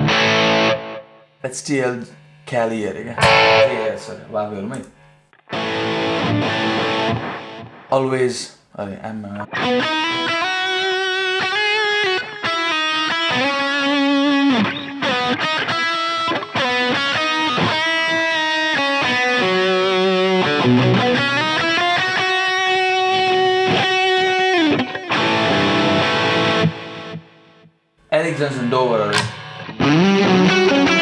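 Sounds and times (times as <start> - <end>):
electric guitar lead melody: 3.2 - 5.1, 28.2 - 29.9.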